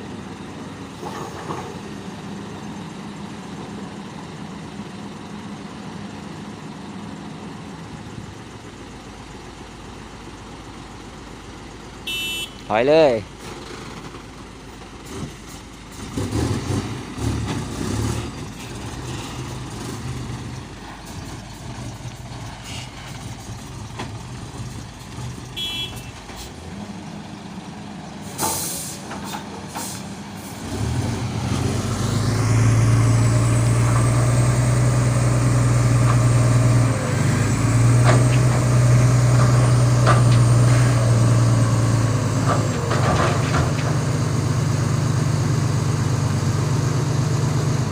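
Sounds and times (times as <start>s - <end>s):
truck diesel engine: 0.0s - 47.9s
short hiss: 28.2s - 29.1s.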